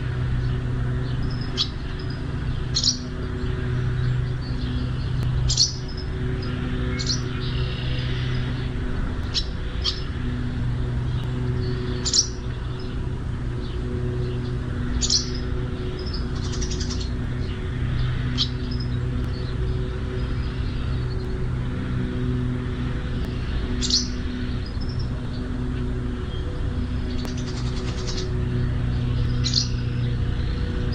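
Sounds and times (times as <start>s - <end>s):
small birds chirping: 0.0s - 30.9s
steady low hum: 0.0s - 30.9s.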